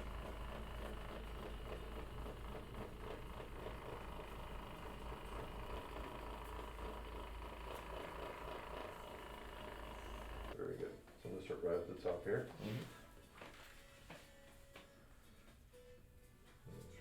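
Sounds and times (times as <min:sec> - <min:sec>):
machine running with low hum: 0:00.0 - 0:10.6.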